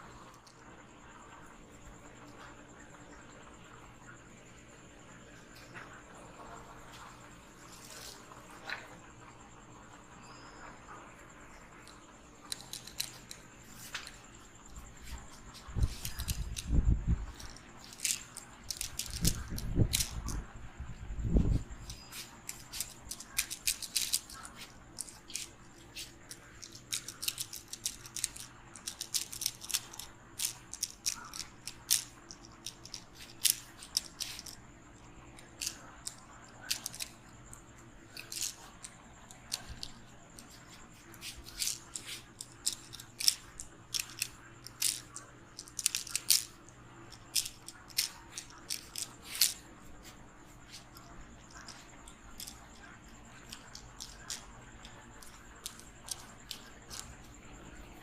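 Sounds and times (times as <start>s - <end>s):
crackling and rubbing of hair: 6.5s - 8.9s, 11.8s - 20.5s, 21.2s - 57.6s.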